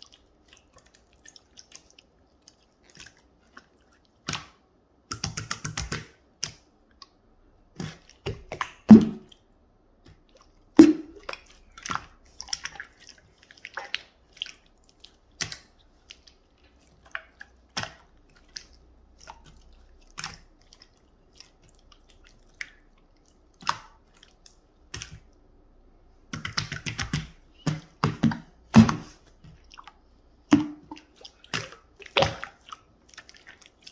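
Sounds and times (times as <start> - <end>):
slime squelching and popping: 7.7 - 9.4, 10.1 - 25.3, 26.3 - 33.9.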